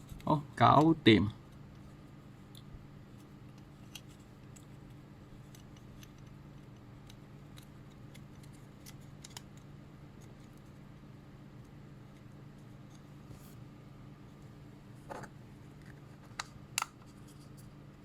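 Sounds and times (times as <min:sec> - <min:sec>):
steady low hum: 0:00.0 - 0:18.0
small parts and tools clicking: 0:05.4 - 0:10.5.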